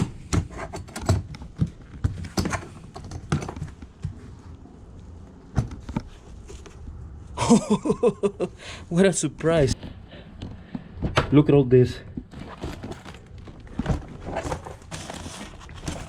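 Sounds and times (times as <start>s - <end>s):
hands rummaging through items: 12.2s - 16.0s.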